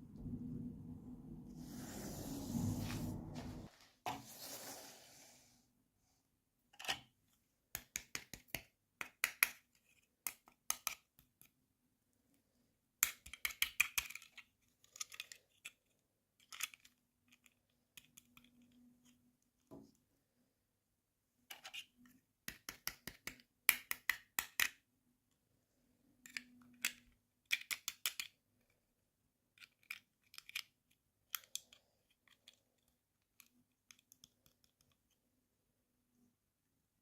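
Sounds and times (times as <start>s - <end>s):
toy pieces clicking and tapping: 7.8s - 11.5s, 13.0s - 15.8s, 16.4s - 19.2s, 22.4s - 24.8s, 26.2s - 28.4s, 29.5s - 35.2s.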